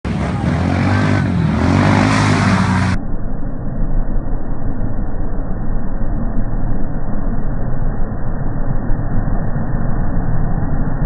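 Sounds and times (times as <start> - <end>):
vehicle engine running: 0.0 - 3.2
low rumble: 0.0 - 11.0.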